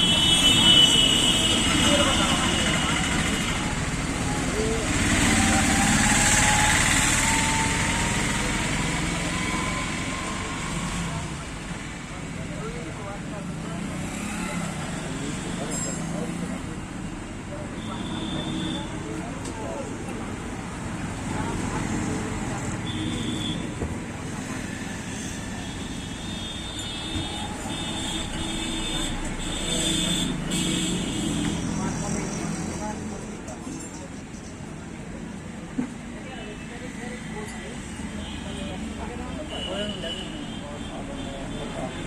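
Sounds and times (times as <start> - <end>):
motor vehicle noise: 0.0 - 42.0
street noise: 0.0 - 42.0.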